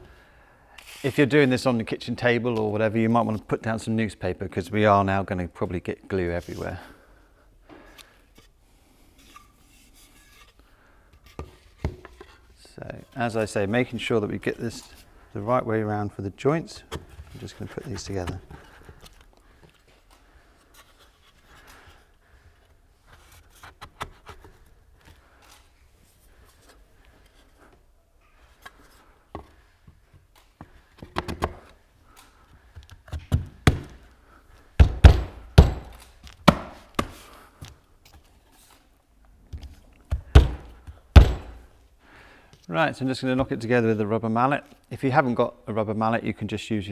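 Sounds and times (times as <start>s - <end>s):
wooden knocks and thunks: 33.3s - 34.1s, 34.8s - 37.2s, 39.6s - 41.7s.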